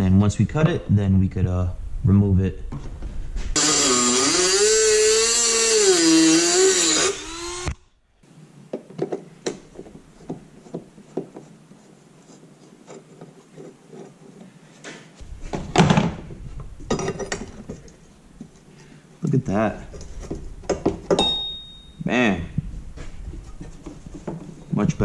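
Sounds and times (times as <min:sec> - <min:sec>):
rotary tool cutting whine: 0:03.6 - 0:07.8.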